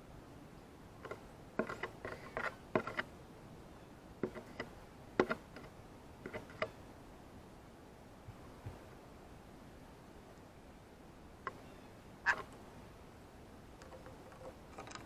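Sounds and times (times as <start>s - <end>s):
bird bill tapping: 11.5s - 12.6s.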